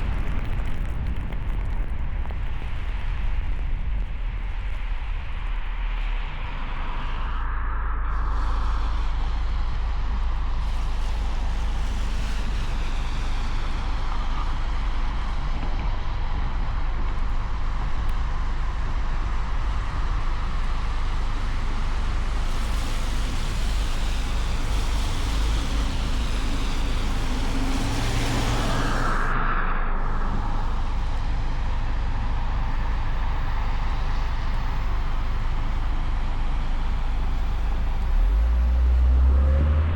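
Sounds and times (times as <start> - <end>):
road and wind rumble: 0.0 - 39.9
hiss: 8.3 - 17.1, 20.4 - 29.4, 30.2 - 39.8.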